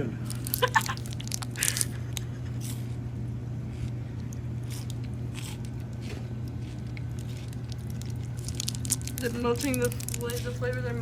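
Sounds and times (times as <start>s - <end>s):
low electrical hum: 0.0s - 11.0s
person chewing snack: 0.2s - 10.6s
soft crunches: 3.7s - 10.8s.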